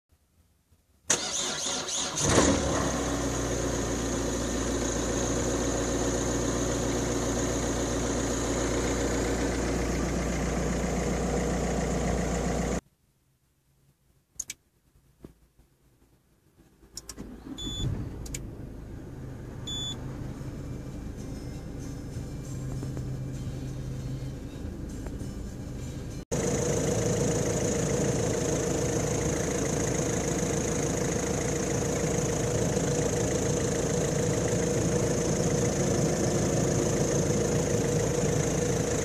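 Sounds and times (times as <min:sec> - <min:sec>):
background noise: 0:00.1 - 0:02.3, 0:12.8 - 0:26.2
car engine starter cranking: 0:01.1 - 0:03.3, 0:17.0 - 0:18.5
car engine idling: 0:01.1 - 0:12.8, 0:17.4 - 0:39.0
clicks: 0:14.4 - 0:14.6
short high beeps: 0:17.6 - 0:17.9, 0:19.7 - 0:20.0.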